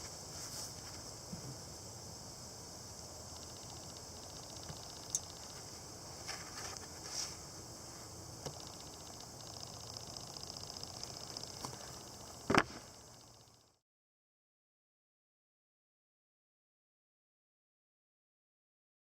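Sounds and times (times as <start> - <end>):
insects trilling: 0.0 - 13.8
steady high hiss: 0.0 - 13.8.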